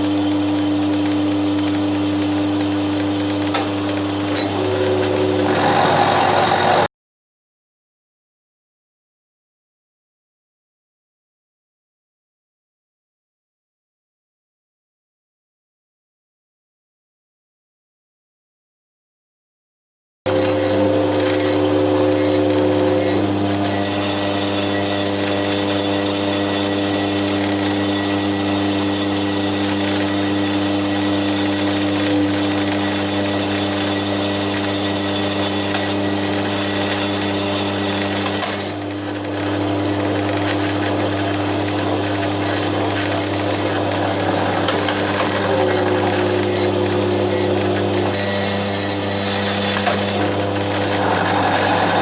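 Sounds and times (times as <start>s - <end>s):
milling machine humming and whining: 0.0s - 6.9s, 20.3s - 52.0s.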